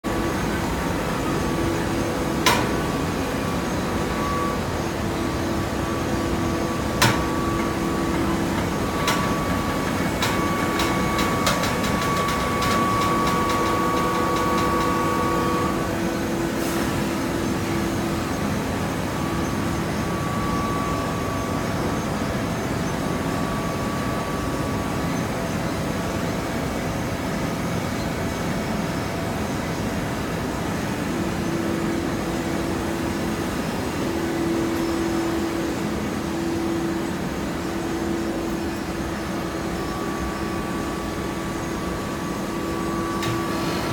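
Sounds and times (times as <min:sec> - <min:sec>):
baling press pump motor: 0:06.4 - 0:15.9.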